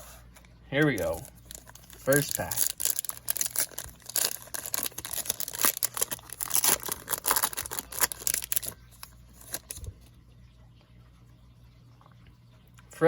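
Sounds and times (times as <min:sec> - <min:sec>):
foil wrapper tearing and crinkling: 0:00.9 - 0:09.9.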